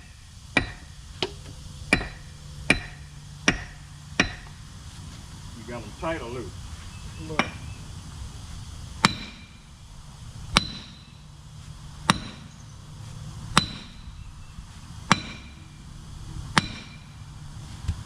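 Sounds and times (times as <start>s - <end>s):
hammer striking metal: 0.6s - 4.6s, 7.3s - 7.7s, 9.0s - 9.6s, 10.6s - 11.2s, 12.1s - 12.5s, 13.6s - 14.1s, 15.1s - 15.7s, 16.6s - 17.2s.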